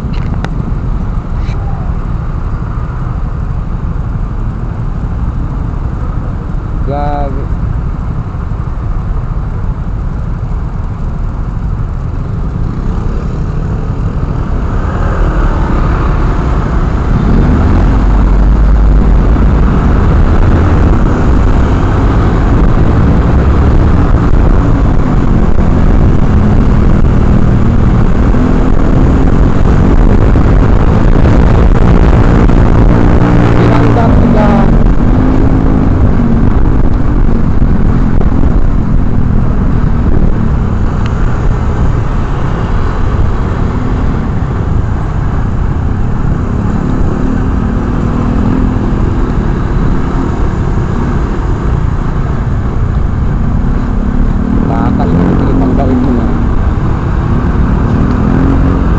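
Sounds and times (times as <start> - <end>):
motorcycle engine revving: 11.6 - 58.9
wind on microphone: 13.6 - 58.9.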